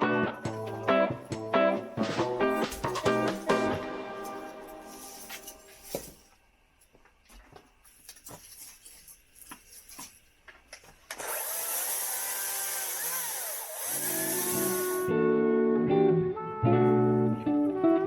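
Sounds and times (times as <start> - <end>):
acoustic guitar music: 0.0 - 5.7, 14.5 - 18.0
chainsaw revving: 11.2 - 15.1.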